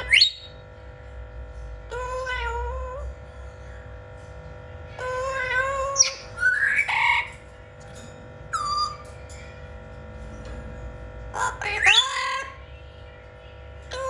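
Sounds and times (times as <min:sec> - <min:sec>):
parrot calling and squawking: 0:00.0 - 0:00.6, 0:01.9 - 0:03.0, 0:05.0 - 0:07.5, 0:08.5 - 0:09.2, 0:11.4 - 0:12.7.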